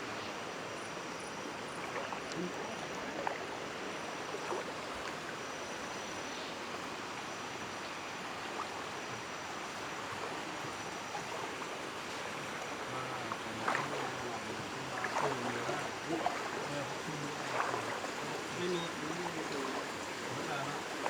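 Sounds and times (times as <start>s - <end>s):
floodwater rushing: 10.0s - 21.0s.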